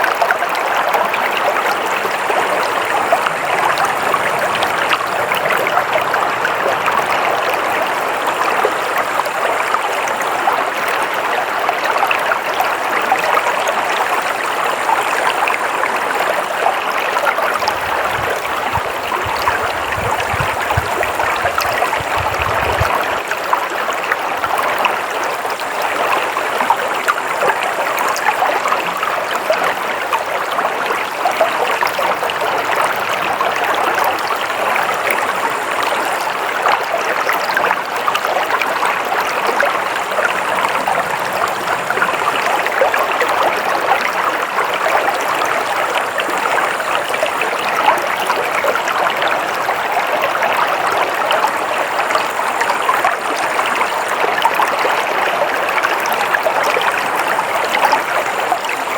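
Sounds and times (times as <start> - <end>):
stream flowing over stones: 0.0 - 58.9.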